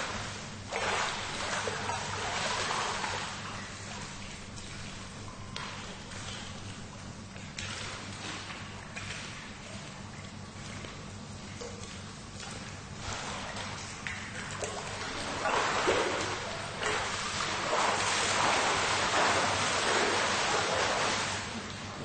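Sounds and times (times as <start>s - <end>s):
swimmer splashing in pool: 0.0s - 4.2s, 13.0s - 21.7s
low steady hum: 0.0s - 22.0s.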